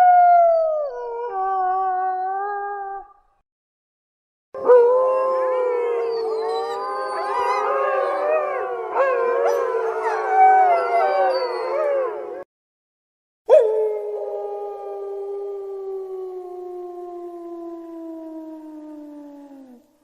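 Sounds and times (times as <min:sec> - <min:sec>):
dogs howling together: 0:04.6 - 0:12.5, 0:13.5 - 0:19.7.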